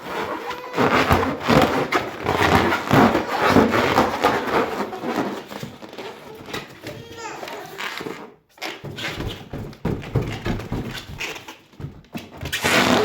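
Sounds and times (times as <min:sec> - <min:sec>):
hands rubbing rubber balloon: 0:00.0 - 0:13.0.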